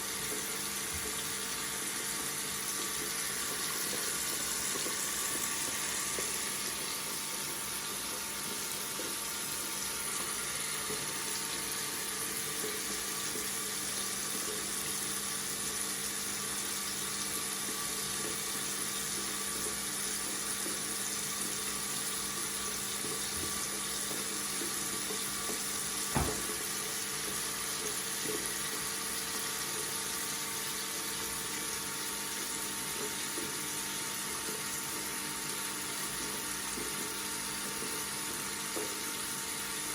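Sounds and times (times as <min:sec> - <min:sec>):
tap running into sink: 0:00.3 - 0:01.3, 0:23.0 - 0:28.6.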